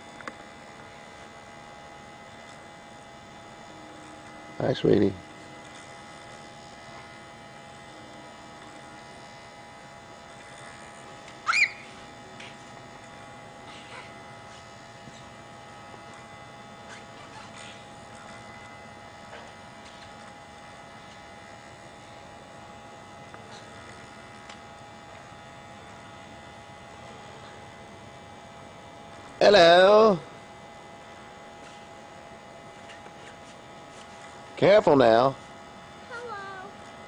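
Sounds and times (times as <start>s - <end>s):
electrical buzzing hum: 0.0s - 37.0s.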